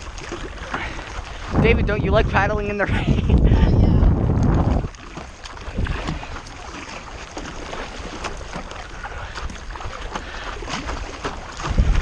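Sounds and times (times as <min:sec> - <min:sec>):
rain falling on a lake: 0:00.0 - 0:01.5
wind rumble on microphone: 0:00.0 - 0:07.2, 0:07.9 - 0:12.0
paddle strokes in water: 0:00.0 - 0:12.0
loud low bump: 0:01.5 - 0:02.6.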